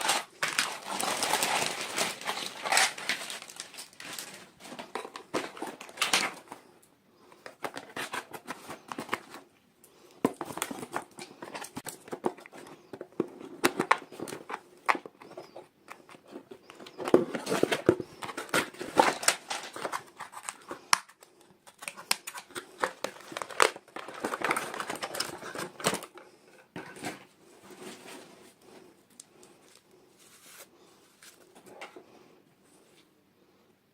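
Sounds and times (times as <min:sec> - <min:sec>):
wrapping crinkling and tearing: 0:00.0 - 0:06.6.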